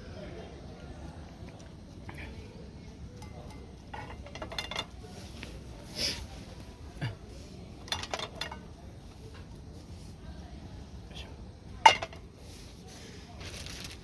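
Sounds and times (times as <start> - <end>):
cookware and utensils clinking: 3.1 - 5.6, 6.7 - 9.5, 11.8 - 12.4.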